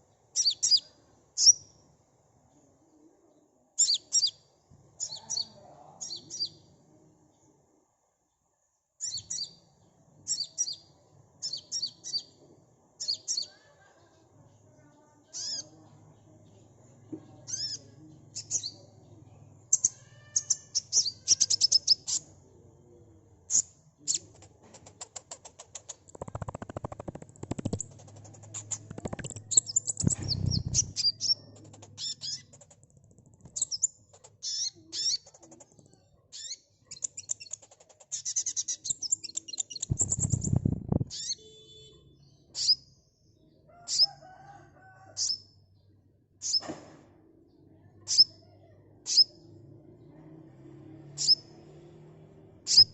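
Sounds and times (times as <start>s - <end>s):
bird chirping and trilling: 0.4s - 1.7s, 3.8s - 4.4s, 5.0s - 6.7s, 9.0s - 9.6s, 10.3s - 12.4s, 13.0s - 13.6s, 15.3s - 15.8s, 17.5s - 18.8s, 19.7s - 22.3s, 25.1s - 32.8s, 33.4s - 35.6s, 36.3s - 42.9s
rustling bursts: 39.9s - 41.2s.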